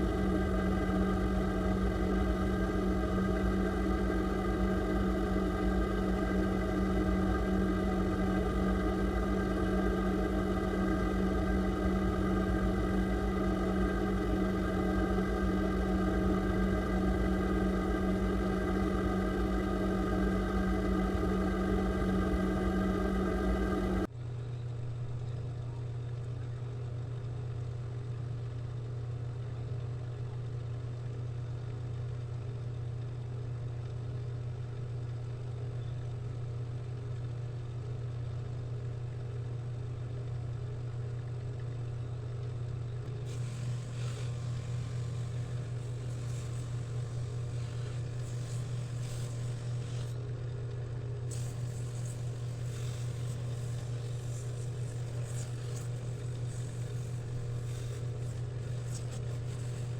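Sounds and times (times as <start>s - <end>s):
louder fuller tone: 0.0s - 24.1s
low machine hum: 0.0s - 59.9s
light scratchy hiss: 51.3s - 59.9s.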